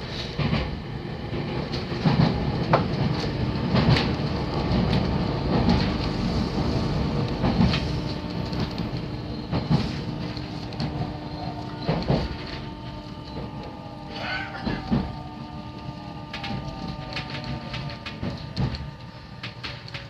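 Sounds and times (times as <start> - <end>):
steady hum: 0.0 - 20.0
train carriage rumble: 0.0 - 20.0
wheels clicking on track: 0.3 - 15.2.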